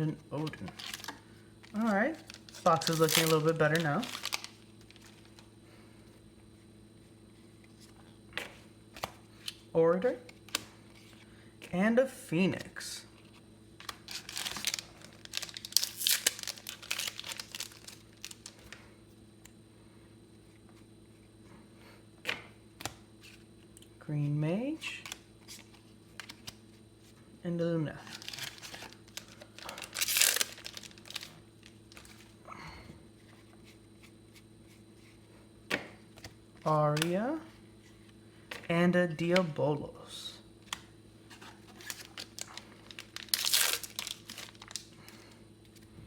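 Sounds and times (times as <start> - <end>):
faint room hum: 0.0 - 46.0
wrapper crinkling and tearing: 0.4 - 5.4, 13.8 - 18.7, 28.0 - 32.3, 41.4 - 44.9.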